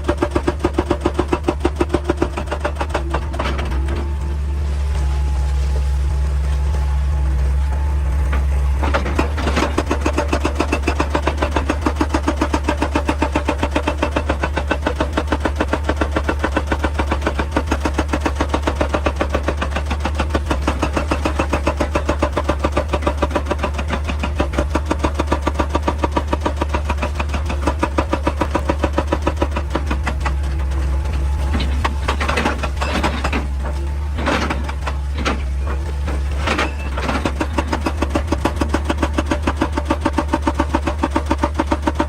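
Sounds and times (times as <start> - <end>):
excavator machinery pulsing: 0.0 - 42.0
steady low hum: 3.0 - 9.8.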